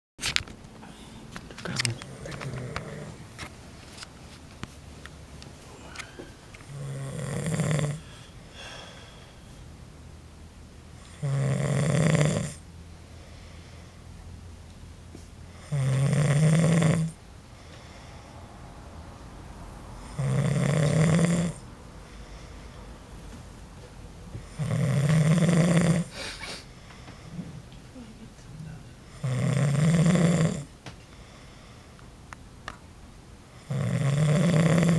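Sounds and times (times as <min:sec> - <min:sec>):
quiet breathing: 0:00.8 - 0:03.5, 0:05.5 - 0:09.8, 0:12.9 - 0:14.4, 0:17.1 - 0:23.5, 0:25.9 - 0:29.4, 0:31.0 - 0:32.2
man snoring: 0:01.7 - 0:03.3, 0:05.7 - 0:09.4, 0:11.0 - 0:12.7, 0:15.5 - 0:17.2, 0:20.0 - 0:21.7, 0:24.4 - 0:26.5, 0:29.0 - 0:30.7, 0:33.6 - 0:34.9.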